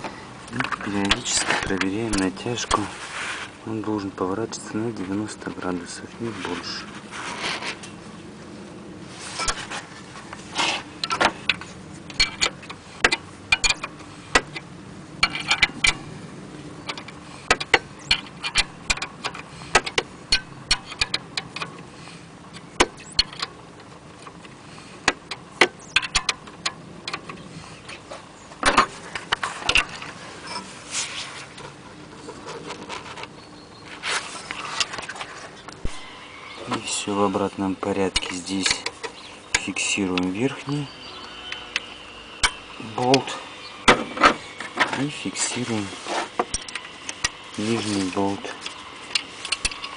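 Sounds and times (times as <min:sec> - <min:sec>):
wrench clinking on bolts: 0:11.0 - 0:14.6, 0:15.2 - 0:16.0, 0:25.8 - 0:27.4.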